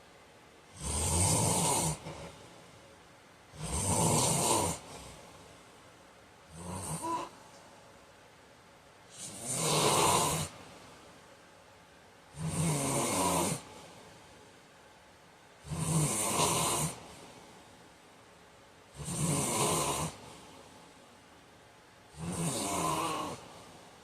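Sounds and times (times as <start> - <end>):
man snoring: 0.7 - 2.4, 3.5 - 5.2, 6.5 - 7.4, 9.1 - 10.6, 12.3 - 13.7, 15.6 - 17.0, 19.0 - 20.2, 22.1 - 23.5.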